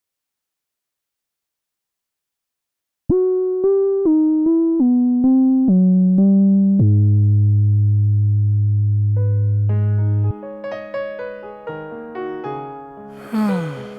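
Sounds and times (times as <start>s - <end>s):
synthesizer keyboard notes: 3.1s - 7.2s.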